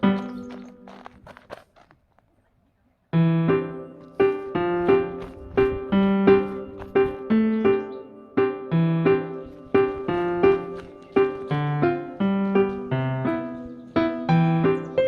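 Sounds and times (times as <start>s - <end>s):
solo piano melody: 3.1s - 15.0s.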